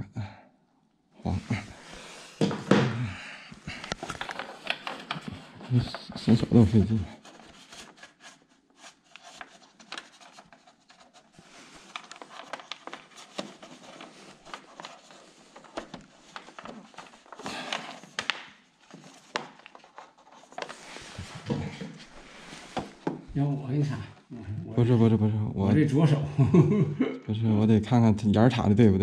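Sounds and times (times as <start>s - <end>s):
cables rustling: 3.5s - 24.4s.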